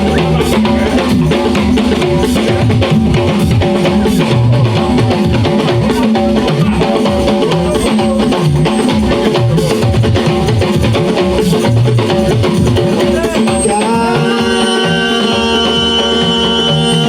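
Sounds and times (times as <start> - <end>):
bass guitar: 0.0 - 17.0
drum kit: 0.0 - 17.0
electric guitar: 0.0 - 17.0.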